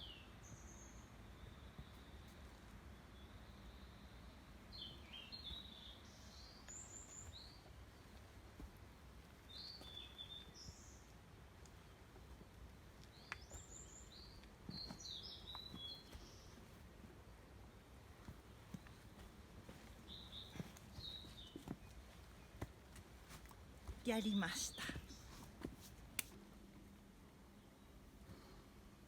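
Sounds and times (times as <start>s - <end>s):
songbird chirping and trilling: 3.0s - 7.7s, 13.0s - 16.7s, 18.7s - 22.6s.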